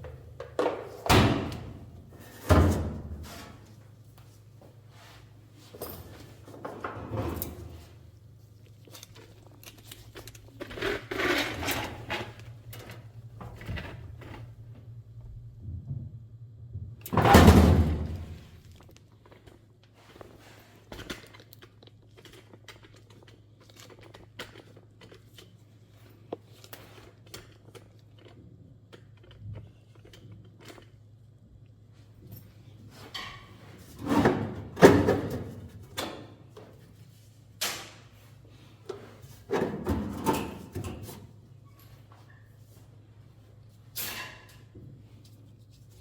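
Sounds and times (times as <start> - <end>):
steady low hum: 7.6 - 19.9.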